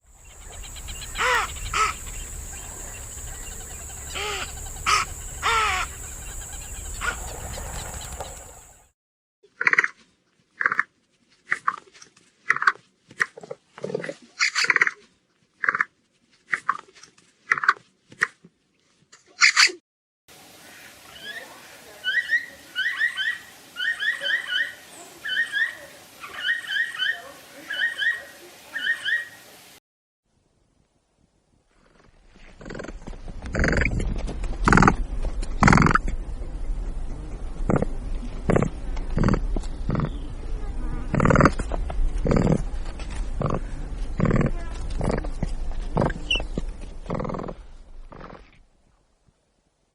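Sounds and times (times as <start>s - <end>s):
capybara chirping: 0.3s - 8.3s, 43.4s - 48.5s
capybara harsh calls: 1.1s - 2.0s, 4.1s - 6.0s
steady high hiss: 20.3s - 29.8s.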